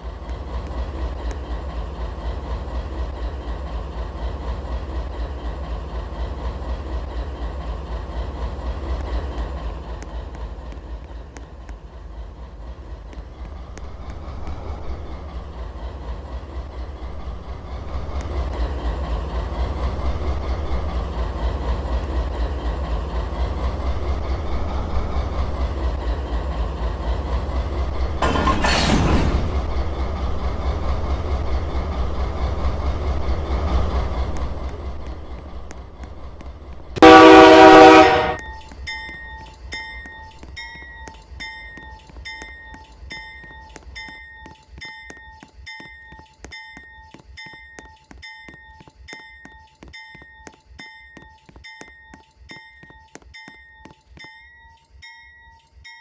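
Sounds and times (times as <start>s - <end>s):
train rumbling past: 0.0s - 55.2s
locomotive horn blast: 37.0s - 38.5s.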